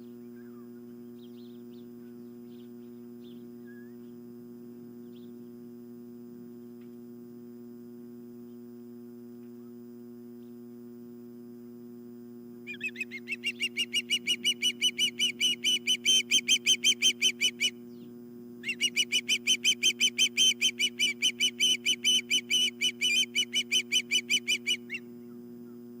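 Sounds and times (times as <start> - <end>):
osprey chirping: 0.0 - 4.2, 12.6 - 25.2.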